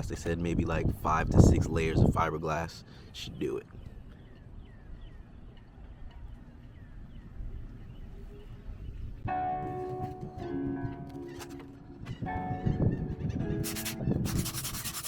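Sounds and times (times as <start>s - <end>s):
low outdoor background: 0.0s - 15.0s
background music with chords: 9.3s - 14.2s.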